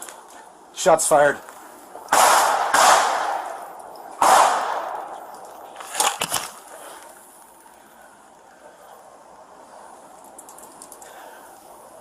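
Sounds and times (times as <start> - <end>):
gunshots with echo: 2.1 - 3.6, 4.2 - 5.1.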